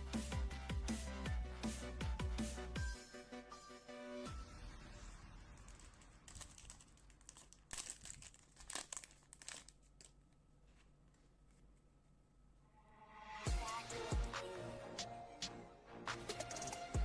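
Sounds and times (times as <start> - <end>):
plastic wrapper crinkling: 5.5 - 11.4.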